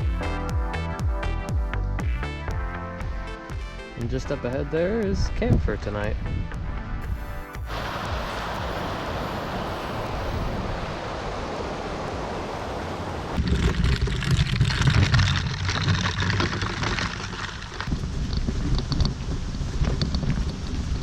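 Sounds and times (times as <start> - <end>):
rushing water: 7.2 - 17.9
wind buffeting microphone: 17.9 - 21.0.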